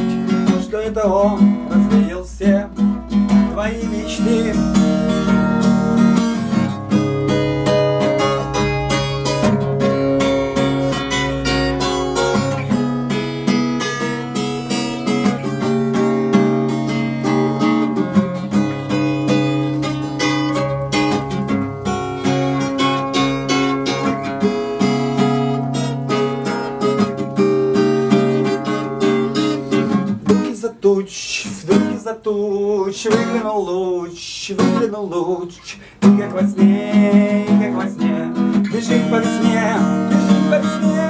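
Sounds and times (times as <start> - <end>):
acoustic guitar strummed and picked: 0.0 - 41.0.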